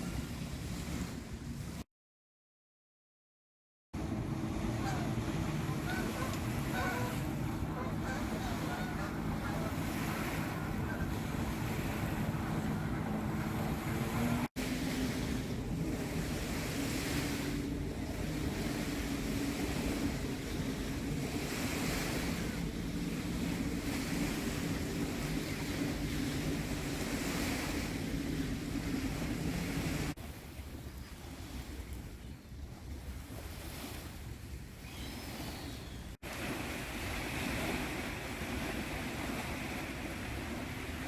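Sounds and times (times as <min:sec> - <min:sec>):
water washing in swells: 0:00.0 - 0:01.8, 0:04.0 - 0:41.0
steady low drone: 0:04.0 - 0:30.2
wind buffeting microphone: 0:04.0 - 0:41.0.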